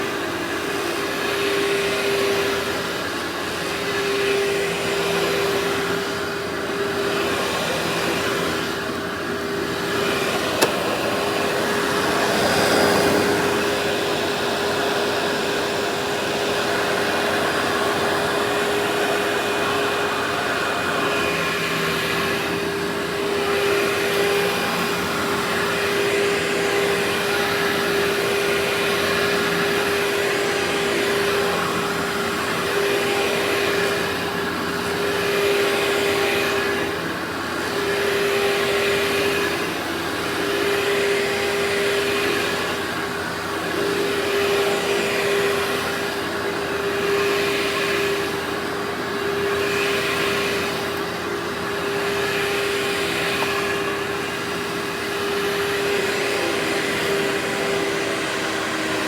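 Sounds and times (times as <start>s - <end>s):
vacuum cleaner running: 0.0s - 59.0s.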